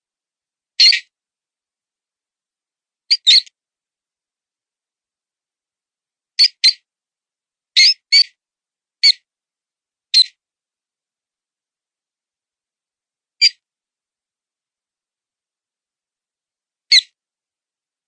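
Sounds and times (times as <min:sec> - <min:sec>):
high-pitched mouse squeaks: 0:00.8 - 0:01.1, 0:03.1 - 0:03.5, 0:07.8 - 0:08.3.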